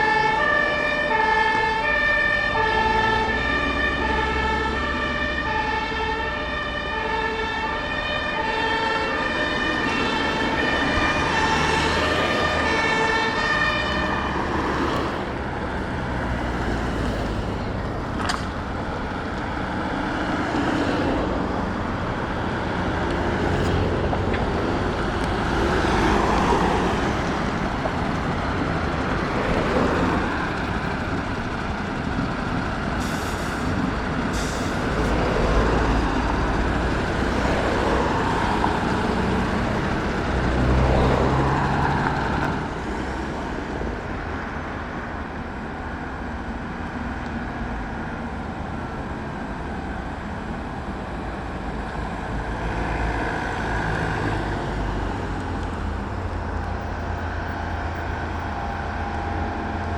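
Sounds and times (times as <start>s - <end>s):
two-tone siren: 0.0s - 15.0s
road noise: 0.0s - 59.9s
vehicle engine: 0.0s - 59.9s.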